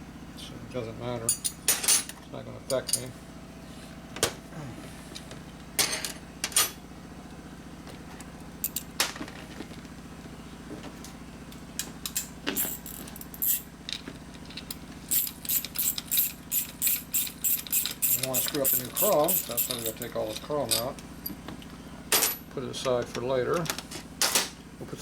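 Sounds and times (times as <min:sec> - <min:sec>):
steady low hum: 0:00.0 - 0:25.0
metal bolts and washers clinking: 0:02.7 - 0:03.1, 0:08.6 - 0:08.9, 0:11.8 - 0:21.4.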